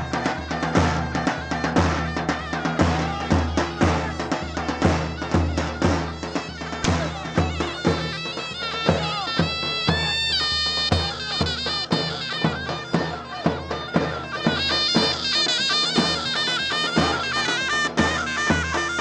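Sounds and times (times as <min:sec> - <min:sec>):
drum beat: 0:00.0 - 0:19.0
shrill folk dance melody: 0:00.0 - 0:19.0.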